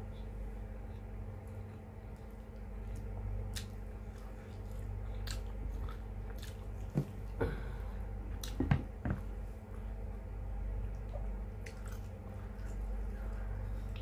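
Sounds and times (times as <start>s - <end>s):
steady low hum: 0.0s - 14.0s
person chewing with mouth clicks: 1.6s - 6.8s.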